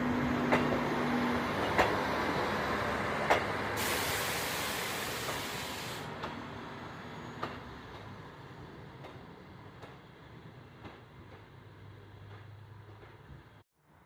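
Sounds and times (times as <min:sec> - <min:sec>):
train rumbling: 0:00.0 - 0:13.6
wheels clacking over rail joints: 0:00.2 - 0:03.8, 0:08.9 - 0:13.6
burst of hiss: 0:03.8 - 0:06.1.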